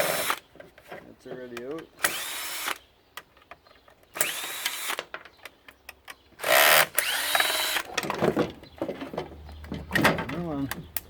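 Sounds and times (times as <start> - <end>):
cordless drill motor whine: 2.0 - 2.8, 4.2 - 5.0, 6.4 - 7.8.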